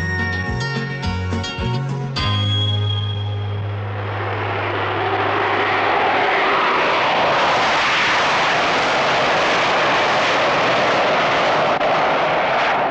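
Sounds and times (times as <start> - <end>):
music: 0.0 - 3.8
loud steady rushing noise: 3.0 - 12.9.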